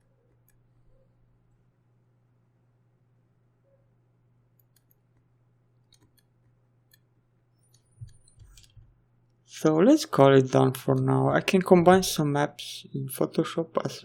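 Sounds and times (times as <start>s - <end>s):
computer mouse clicks: 0.3s - 0.8s, 4.6s - 5.2s, 5.8s - 8.9s.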